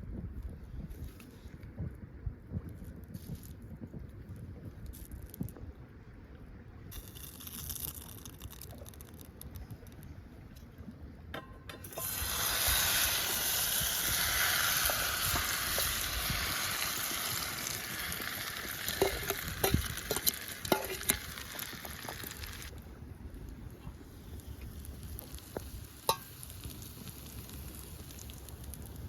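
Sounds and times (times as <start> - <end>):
food sizzling in a pan: 11.9 - 22.7.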